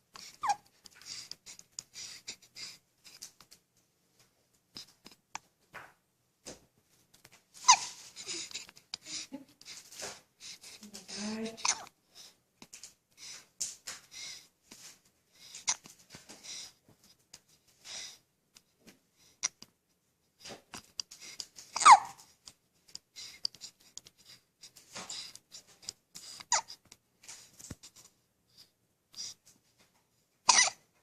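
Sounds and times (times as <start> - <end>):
baby breathy snuffles: 0.2 - 3.2, 7.6 - 11.9, 23.1 - 26.8
baby hiccuping: 0.4 - 0.6, 7.6 - 8.5, 11.6 - 11.9, 21.7 - 22.2, 26.5 - 26.7, 30.5 - 30.8
baby squeak: 0.4 - 0.6, 7.6 - 8.4, 11.6 - 11.9, 21.8 - 22.2, 30.5 - 30.8.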